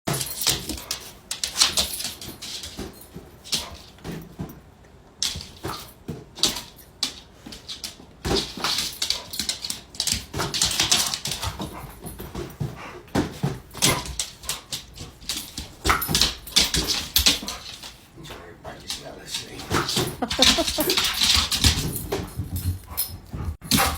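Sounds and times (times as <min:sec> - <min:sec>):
dog whimpering: 0:20.2 - 0:21.0.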